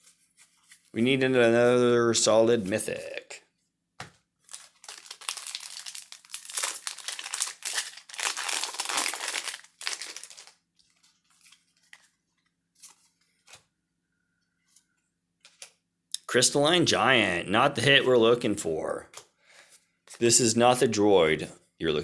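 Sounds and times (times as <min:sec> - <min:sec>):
cards rustling and tapping: 0:04.0 - 0:13.7, 0:14.7 - 0:15.8, 0:19.1 - 0:20.2
foil wrapper tearing and crinkling: 0:04.4 - 0:12.1.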